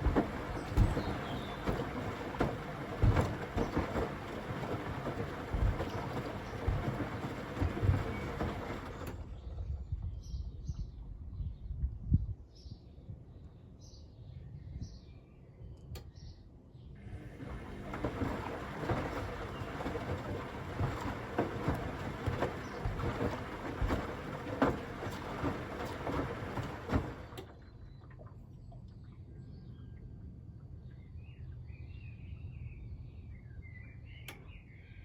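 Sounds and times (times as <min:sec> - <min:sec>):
washing machine drum sloshing: 0:00.0 - 0:09.6, 0:17.0 - 0:28.3.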